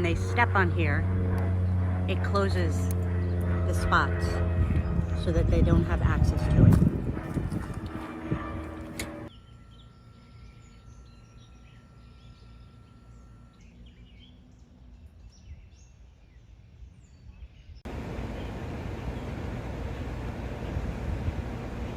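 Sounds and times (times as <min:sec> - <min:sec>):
bird chirps: 0:09.3 - 0:19.3.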